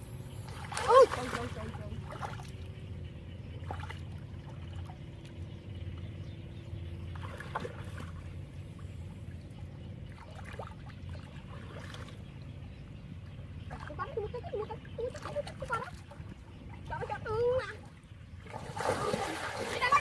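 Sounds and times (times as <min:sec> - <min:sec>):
steady low rumble: 0:00.0 - 0:20.0
water trickling and splashing: 0:00.0 - 0:20.0.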